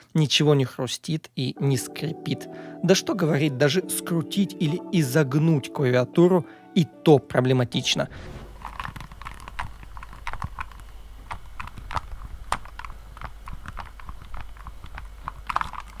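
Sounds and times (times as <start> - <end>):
faint low hum: 7.7 - 16.0
mechanical keyboard typing: 8.4 - 16.0.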